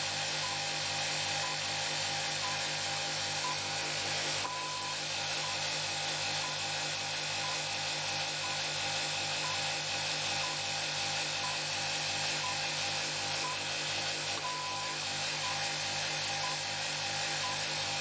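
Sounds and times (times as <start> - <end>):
generator running with rhythmic throb: 0.0 - 18.0
short high beeps: 4.4 - 5.6, 14.4 - 15.7.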